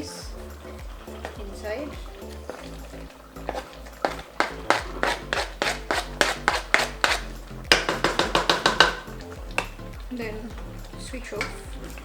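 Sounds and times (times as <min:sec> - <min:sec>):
soft background music: 0:00.0 - 0:12.0
rapid sharp knocks: 0:03.5 - 0:09.8.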